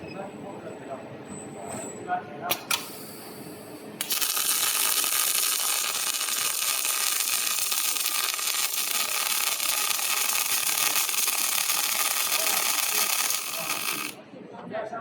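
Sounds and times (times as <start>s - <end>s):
welding arc hissing and crackling: 2.5s - 14.2s.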